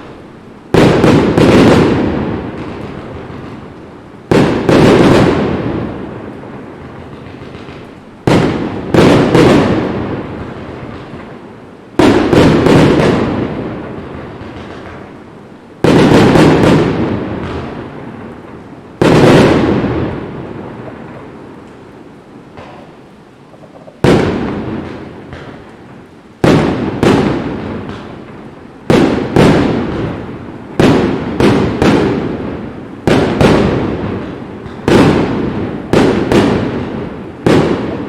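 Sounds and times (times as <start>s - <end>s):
long echo of bangs: 0.0s - 3.7s, 4.3s - 11.4s, 12.0s - 15.1s, 15.8s - 21.4s, 24.0s - 38.0s
firework shells bursting: 22.5s - 38.0s.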